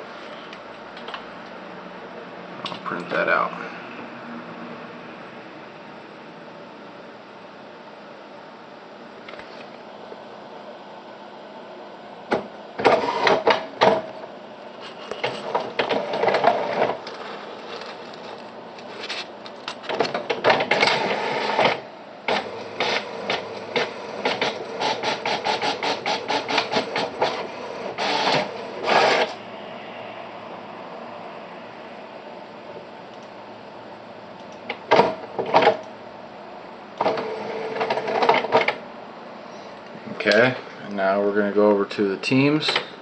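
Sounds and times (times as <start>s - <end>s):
printer carriage rasping: 12.3s - 14.1s, 15.0s - 18.1s, 19.9s - 29.4s, 37.0s - 38.8s
printer quick clicks: 12.3s - 14.1s.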